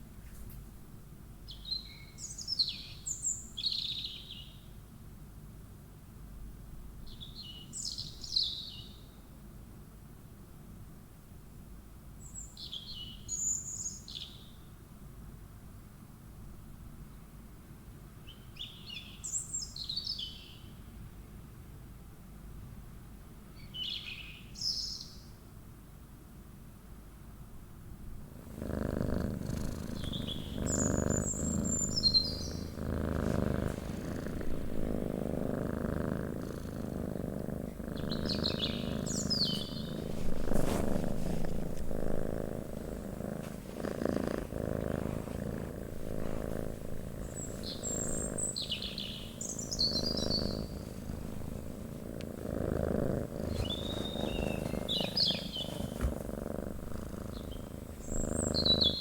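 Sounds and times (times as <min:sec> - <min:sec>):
small birds chirping: 0:01.5 - 0:04.7, 0:07.1 - 0:09.1, 0:12.2 - 0:14.6, 0:18.3 - 0:20.7, 0:23.6 - 0:25.3, 0:28.4 - 0:59.0
cat purring: 0:28.2 - 0:59.0.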